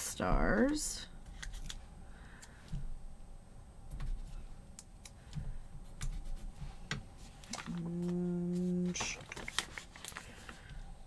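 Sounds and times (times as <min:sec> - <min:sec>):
paper pieces clicking and tapping: 0:08.9 - 0:10.3.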